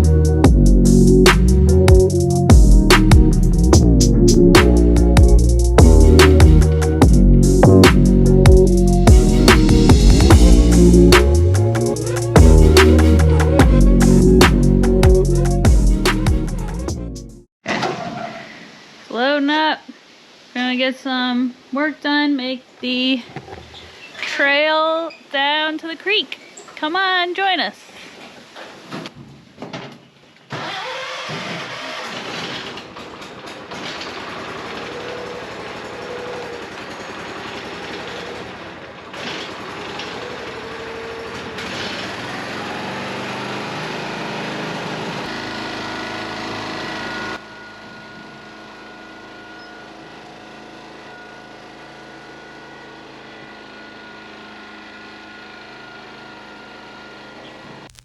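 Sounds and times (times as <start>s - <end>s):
engine starting and running: 0.0s - 16.9s, 30.5s - 58.0s.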